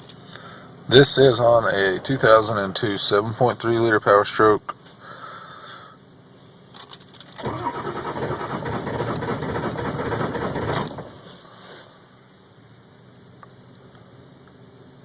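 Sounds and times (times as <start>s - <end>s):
diesel engine starter cranking: 7.3s - 11.3s.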